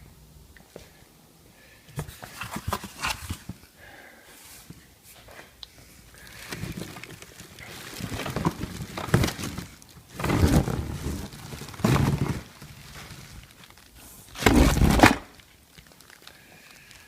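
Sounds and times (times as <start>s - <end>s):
packaging rustling and scraping: 2.0s - 3.6s, 6.1s - 17.0s
packaging thumps: 6.4s - 16.2s.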